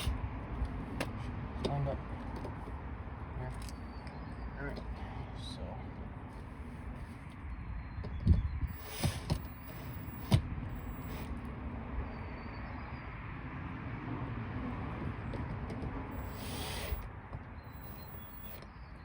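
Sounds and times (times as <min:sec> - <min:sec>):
brief scraping hiss: 0:08.7 - 0:11.3, 0:16.2 - 0:17.1.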